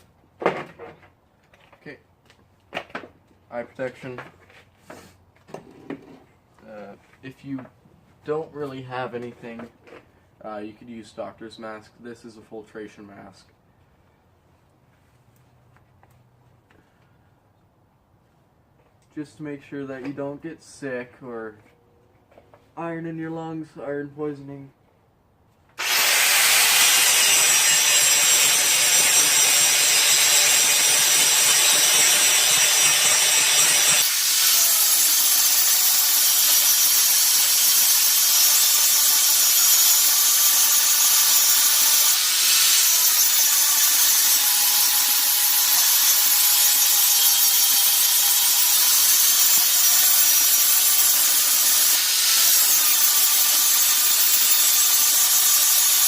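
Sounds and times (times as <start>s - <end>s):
power grinder grinding steel: 25.8s - 56.0s.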